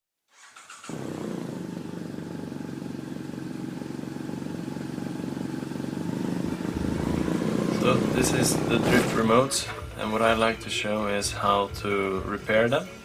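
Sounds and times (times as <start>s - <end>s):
motor running with fast pulse: 0.9s - 2.6s.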